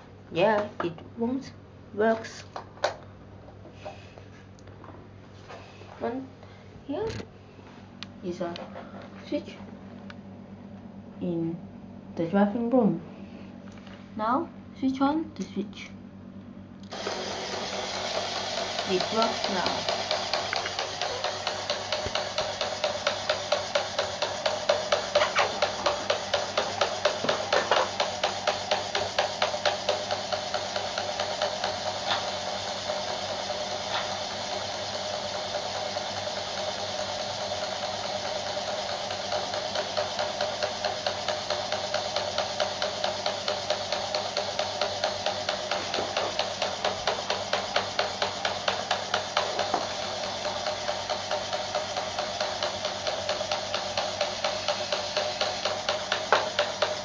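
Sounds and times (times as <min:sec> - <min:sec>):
electric pump chugging: 0:16.8 - 0:57.0.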